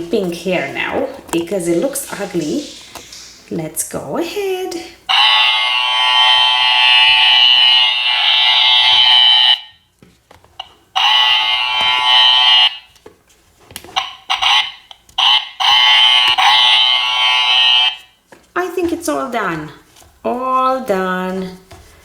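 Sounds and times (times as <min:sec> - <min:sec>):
toy electric clipper buzzing: 0:05.1 - 0:09.7, 0:10.6 - 0:12.9, 0:14.0 - 0:18.1.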